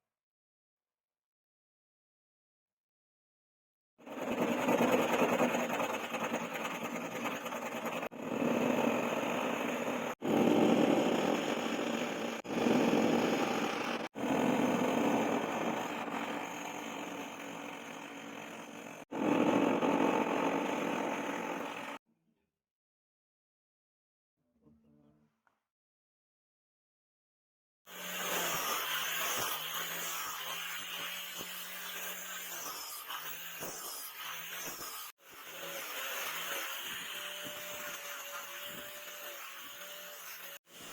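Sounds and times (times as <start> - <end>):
power tool cutting steel: 4.1 - 22.0, 27.9 - 40.9.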